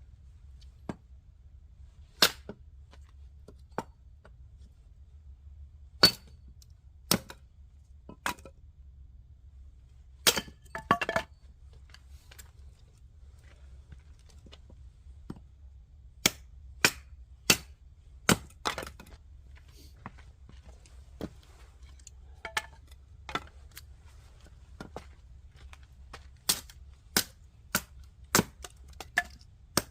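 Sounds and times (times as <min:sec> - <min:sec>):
firewood cracking and knocking: 0:21.2 - 0:23.8.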